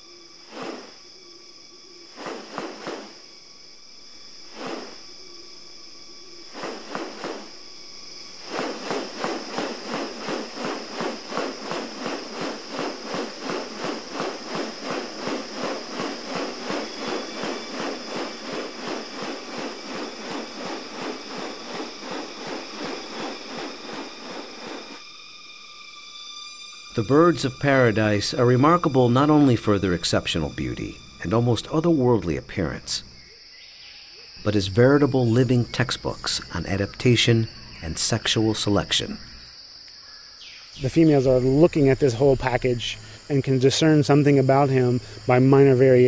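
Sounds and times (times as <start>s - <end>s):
insect drone: 0.0s - 46.0s
rapid pulsing calls: 6.2s - 39.5s.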